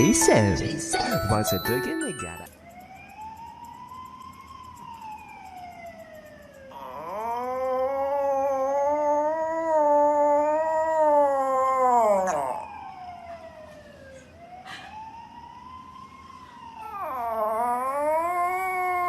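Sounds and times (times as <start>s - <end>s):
dog howling: 6.7s - 12.9s, 16.8s - 19.0s.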